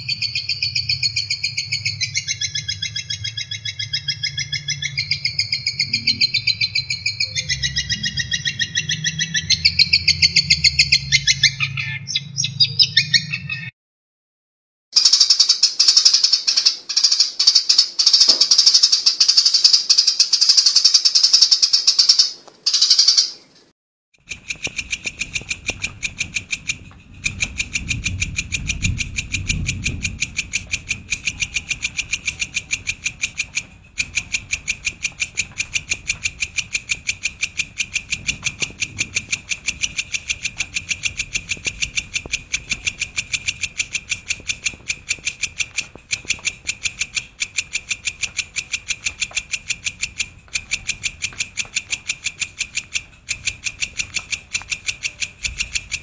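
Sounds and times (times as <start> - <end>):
low rumble: 0.0 - 13.5, 25.6 - 34.2
recorded songbird call: 0.0 - 13.7, 15.0 - 23.5.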